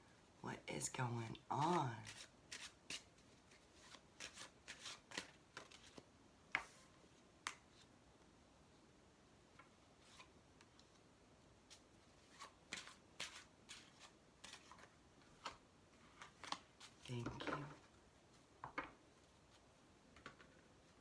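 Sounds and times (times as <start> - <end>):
cards being shuffled: 1.6 - 6.9, 11.7 - 17.8.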